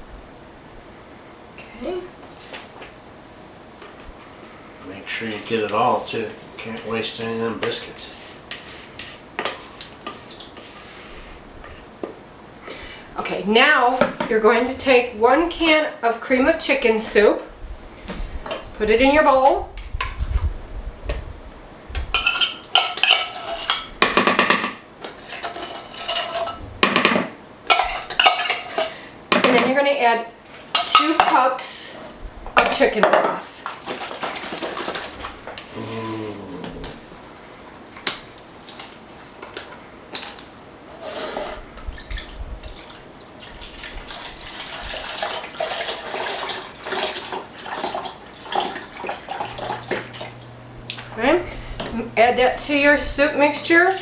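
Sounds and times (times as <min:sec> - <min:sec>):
liquid pouring and splashing: 0:33.7 - 0:35.3, 0:41.9 - 0:50.4.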